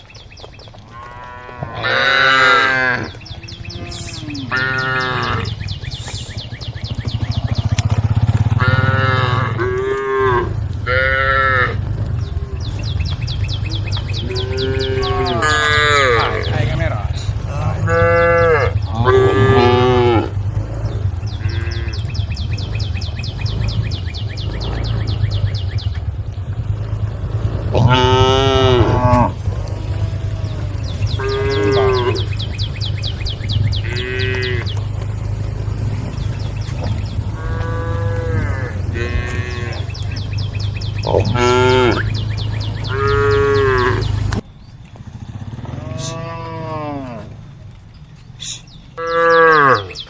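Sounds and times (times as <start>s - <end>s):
cattle mooing: 0.9s - 6.3s, 7.0s - 25.4s, 26.7s - 44.4s, 45.5s - 47.6s, 48.4s - 50.0s
steady low rumble: 2.4s - 49.0s.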